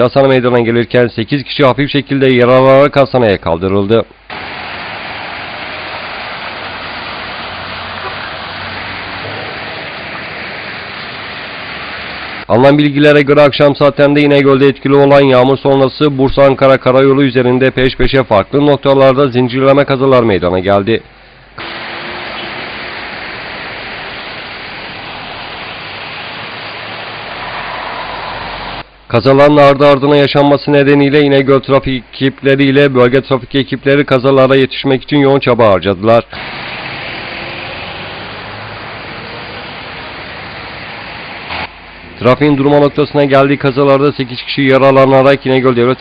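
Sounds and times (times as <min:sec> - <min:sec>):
outdoor rushing noise: 0:04.3 - 0:12.5, 0:21.6 - 0:28.9, 0:36.4 - 0:43.3
wet road traffic hiss: 0:04.3 - 0:12.5, 0:21.1 - 0:29.0, 0:36.3 - 0:46.0.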